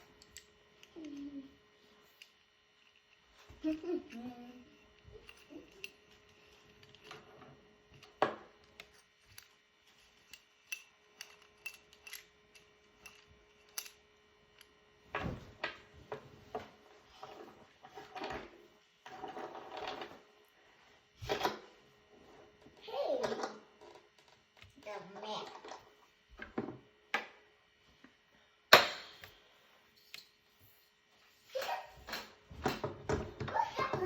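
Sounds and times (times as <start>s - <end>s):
objects clicking and tapping: 4.8s - 18.5s
clattering and rustling: 15.1s - 20.3s.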